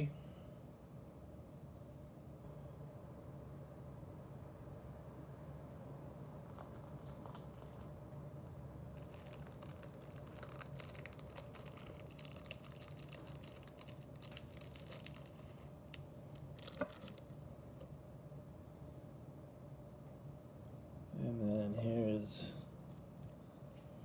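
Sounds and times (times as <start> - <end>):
faint steady hum: 0.0 - 24.0
packaging crinkling: 6.4 - 17.4.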